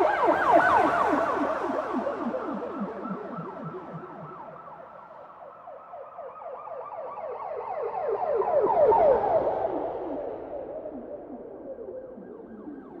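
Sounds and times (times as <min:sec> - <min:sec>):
police siren yelping: 0:00.0 - 0:09.1.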